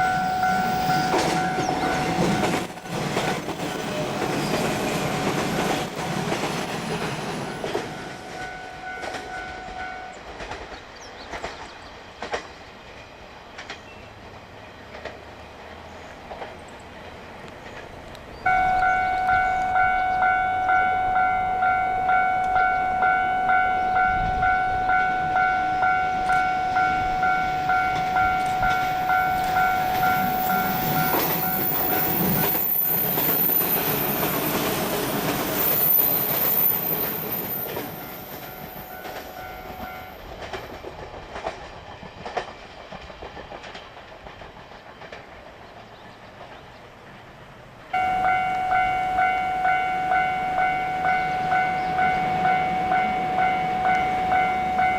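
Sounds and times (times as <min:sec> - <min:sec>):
level crossing warning bell: 0:00.0 - 0:06.4, 0:07.7 - 0:10.2, 0:18.5 - 0:40.3, 0:47.9 - 0:54.9
electric train running past: 0:00.0 - 0:54.9.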